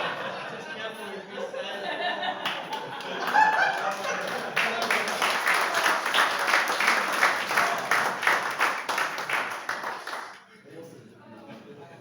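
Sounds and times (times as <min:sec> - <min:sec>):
small audience clapping: 0:02.4 - 0:10.5.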